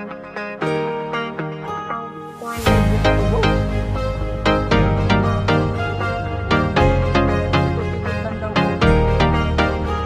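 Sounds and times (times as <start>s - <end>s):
steady bass: 2.6s - 10.0s.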